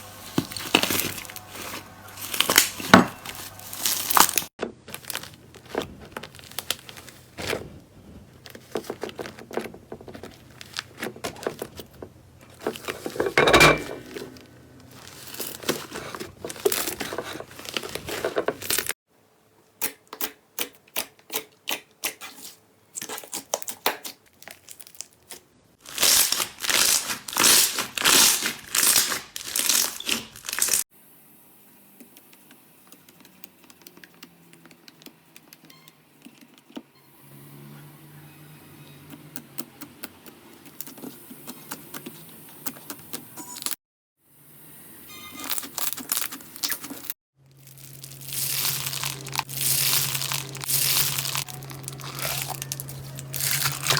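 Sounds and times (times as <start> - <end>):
slime squishing with crackles and pops: 0.2 - 7.2, 45.4 - 53.9.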